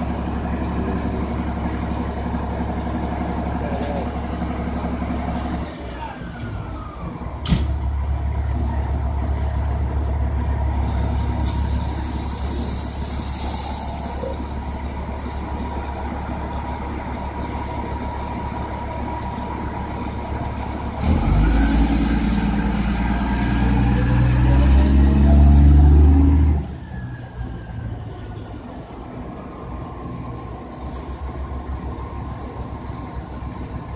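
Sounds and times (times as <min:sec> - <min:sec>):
diesel engine running: 0:00.0 - 0:26.8
fire truck revving and pulling away: 0:00.0 - 0:33.9.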